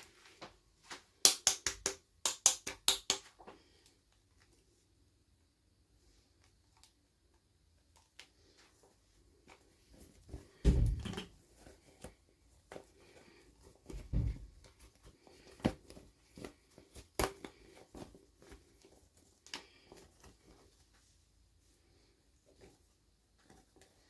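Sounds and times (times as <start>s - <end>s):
plastic toys clicking and tapping: 1.2s - 3.4s.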